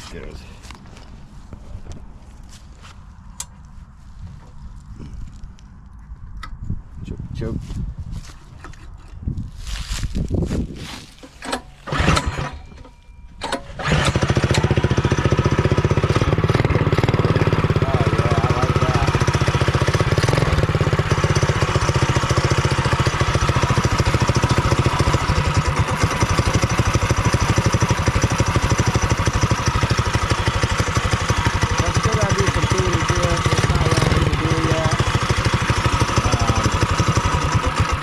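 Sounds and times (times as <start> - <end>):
engine running steadily: 10.9 - 38.0
engine cranking: 11.1 - 38.0.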